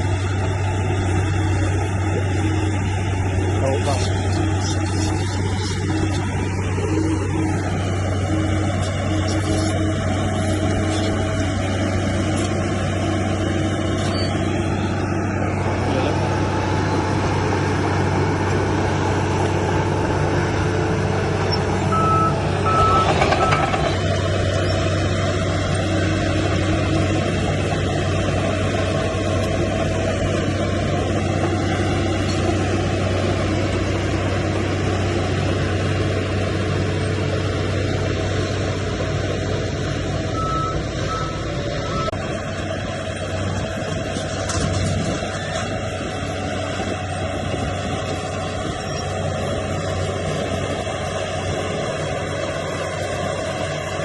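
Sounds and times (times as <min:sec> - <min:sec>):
bulldozer engine drone: 0:00.0 - 0:54.0
backup alarm beeps: 0:21.9 - 0:23.8.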